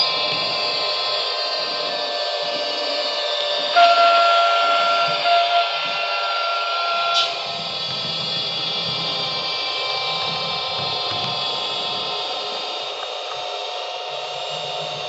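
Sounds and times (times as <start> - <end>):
held tone: 0.0 - 7.6
rising squeak: 0.0 - 11.7
high electric whine: 0.0 - 15.0.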